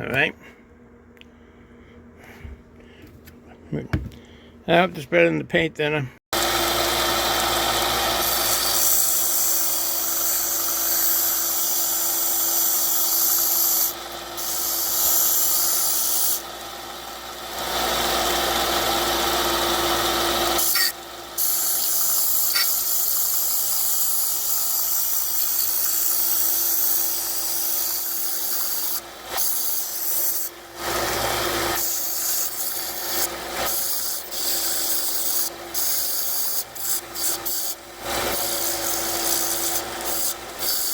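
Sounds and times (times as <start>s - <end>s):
power tool whirring: 6.4s - 40.9s
tool rubbing: 20.5s - 40.9s.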